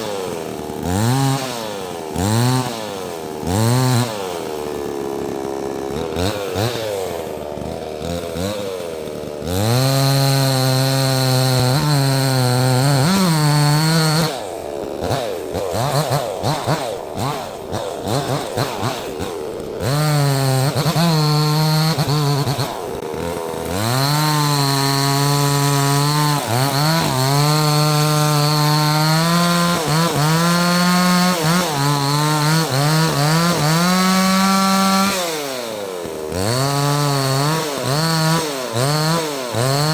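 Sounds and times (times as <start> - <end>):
chainsaw cutting log: 0.0 - 39.9.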